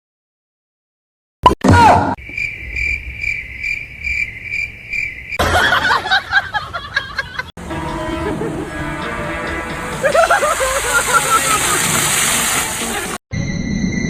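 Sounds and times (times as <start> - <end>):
cricket chirping: 2.2 - 6.3.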